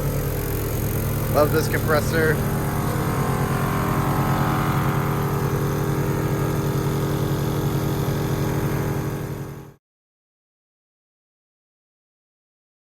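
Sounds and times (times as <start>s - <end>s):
air compressor running: 0.0s - 9.8s.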